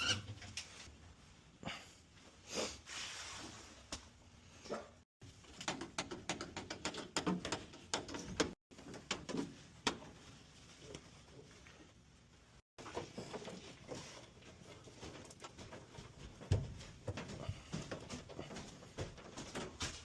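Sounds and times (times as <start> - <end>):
knocks clicks and scrapes: 5.3 - 10.2.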